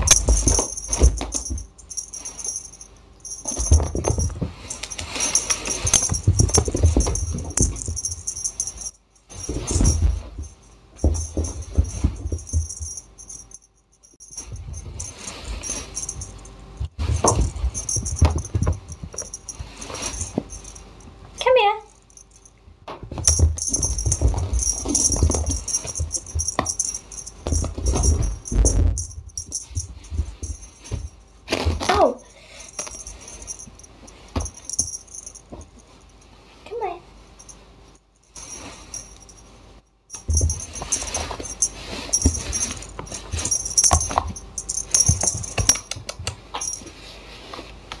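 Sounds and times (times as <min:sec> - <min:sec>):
bumps and rustling: 0:00.0 - 0:21.3, 0:22.9 - 0:32.1, 0:40.1 - 0:48.0
metallic jingling and rattling: 0:00.0 - 0:22.5, 0:23.1 - 0:31.4, 0:32.8 - 0:36.2, 0:40.1 - 0:47.0.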